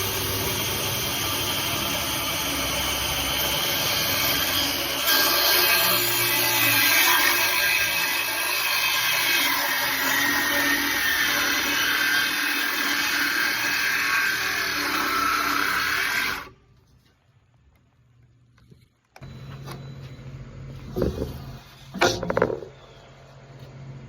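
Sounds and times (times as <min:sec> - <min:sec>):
circular saw cutting wood: 0:00.0 - 0:16.6.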